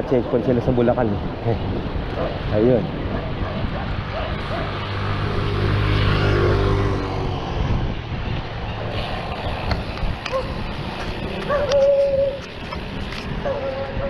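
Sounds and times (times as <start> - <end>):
road and wind rumble: 0.0 - 14.0
vehicle driving past: 4.0 - 9.6.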